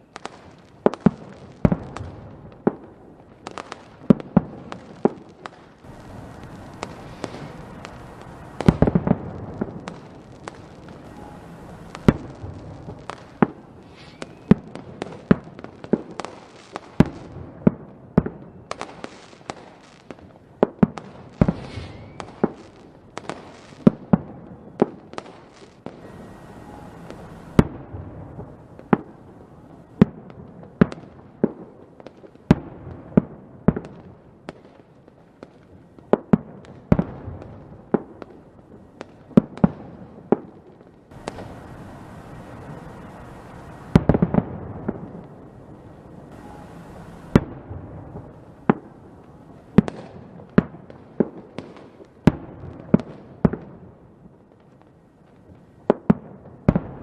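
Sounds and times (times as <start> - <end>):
fireworks bangs: 0.0 - 57.0
fireworks crackling: 0.0 - 57.0
faint firework whistle: 5.9 - 9.2, 9.8 - 15.4, 18.2 - 19.2, 21.4 - 22.7, 24.4 - 30.2, 41.1 - 50.1.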